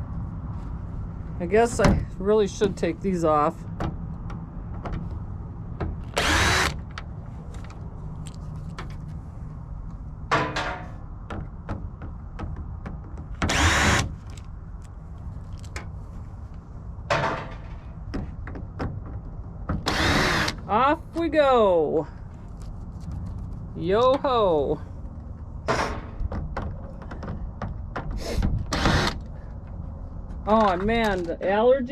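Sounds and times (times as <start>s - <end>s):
cordless screwdriver whirring: 6.1s - 6.9s, 13.5s - 14.1s, 19.9s - 20.6s, 28.8s - 29.3s.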